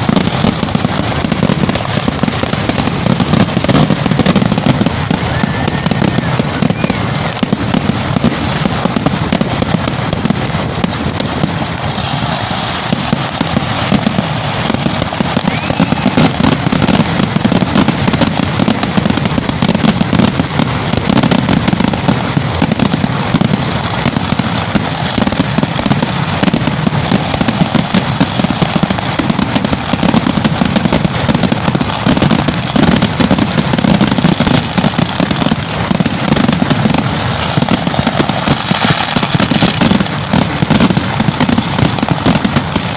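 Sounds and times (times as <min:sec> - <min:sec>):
firecracker bangs barrage: 0:00.0 - 0:42.9.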